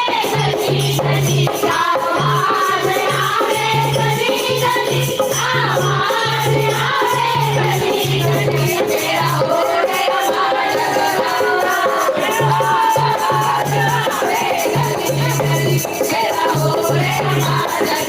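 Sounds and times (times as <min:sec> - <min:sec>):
group singing devotional song: 0:00.0 - 0:18.0
jingling hand percussion: 0:00.0 - 0:18.0.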